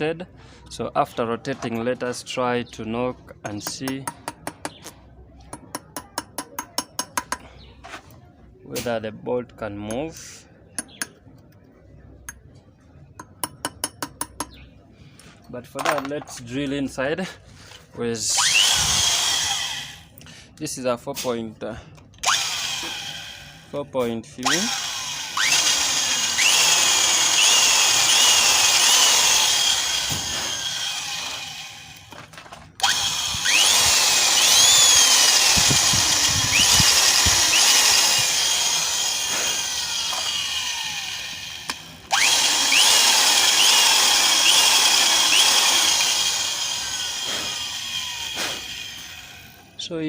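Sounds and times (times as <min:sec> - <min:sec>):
electric drill drilling into metal: 0:18.4 - 0:20.1, 0:22.2 - 0:23.6, 0:24.4 - 0:32.1, 0:32.8 - 0:49.6.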